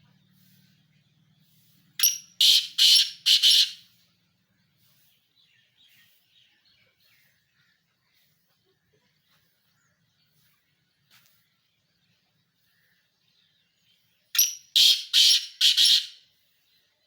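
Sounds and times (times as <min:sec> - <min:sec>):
pheasant calling harshly: 0:02.0 - 0:04.0, 0:14.4 - 0:16.2.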